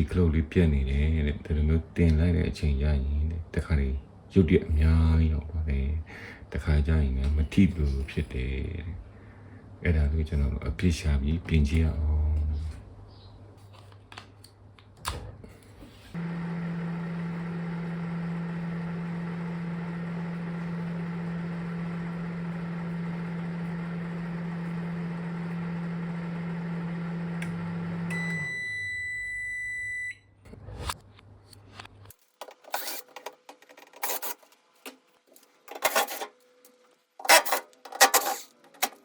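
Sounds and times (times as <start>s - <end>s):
microwave oven humming: 16.2s - 30.4s.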